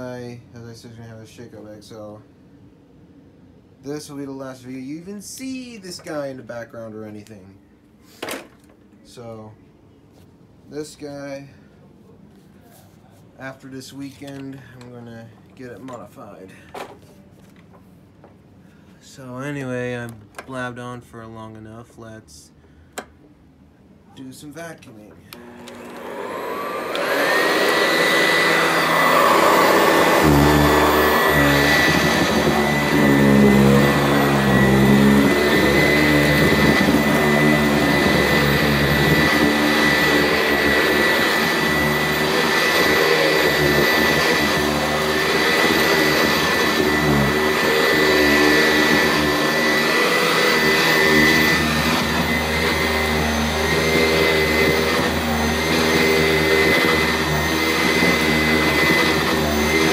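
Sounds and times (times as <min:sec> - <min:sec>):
vacuum cleaner motor whine: 0:25.3 - 0:59.9
low vacuuming rumble: 0:25.4 - 0:59.9.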